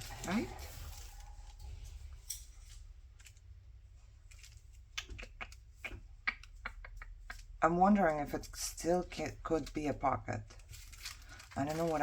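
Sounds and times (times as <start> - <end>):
paper rustling: 0.0 - 4.9, 8.9 - 12.0.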